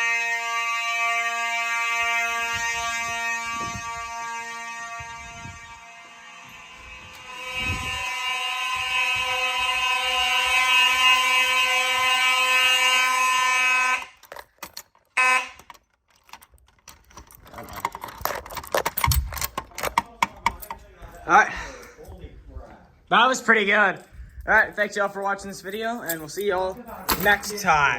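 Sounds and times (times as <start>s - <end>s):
fire alarm horn: 0.0s - 14.4s, 15.1s - 15.8s
clicks and handling knocks: 14.2s - 20.9s, 26.1s - 27.7s.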